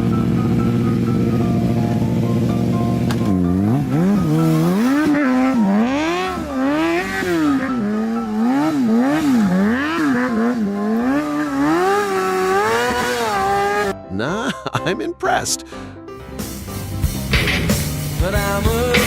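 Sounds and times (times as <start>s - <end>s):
engine revving: 0.0s - 14.0s.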